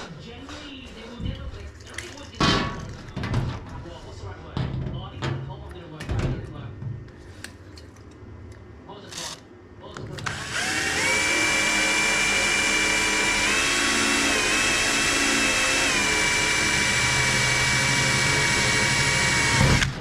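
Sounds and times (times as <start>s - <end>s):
electric drill whining: 10.2s - 20.0s.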